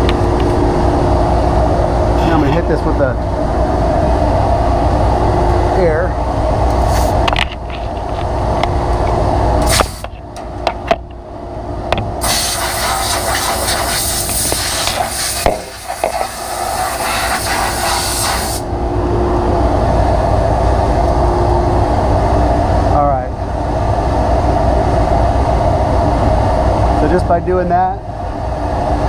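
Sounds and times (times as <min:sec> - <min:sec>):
motor hum: 0:00.0 - 0:27.2
compressed air hissing from nozzle: 0:06.8 - 0:07.2, 0:09.6 - 0:10.1, 0:12.2 - 0:18.7.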